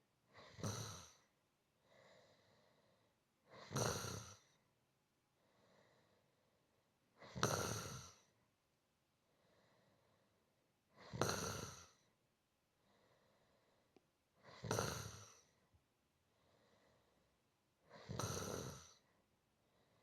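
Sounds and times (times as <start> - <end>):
person snoring: 0.3 - 1.3, 3.5 - 4.6, 7.2 - 8.3, 11.0 - 12.1, 14.4 - 15.6, 17.9 - 19.0
faint breath: 1.2 - 3.6, 5.4 - 6.8, 9.2 - 10.5, 12.8 - 14.0, 16.3 - 18.1, 18.9 - 20.0.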